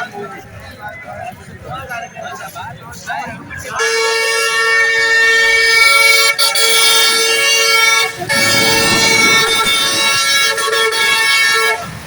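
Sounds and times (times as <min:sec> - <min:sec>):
vehicle horn blaring: 0:03.8 - 0:12.0.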